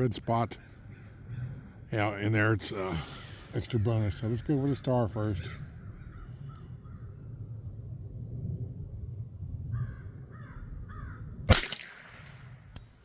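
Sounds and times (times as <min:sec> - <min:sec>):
wind on microphone: 0:00.0 - 0:13.0
crow cawing: 0:04.4 - 0:07.0, 0:09.8 - 0:11.2
rifle shot: 0:11.5 - 0:12.9.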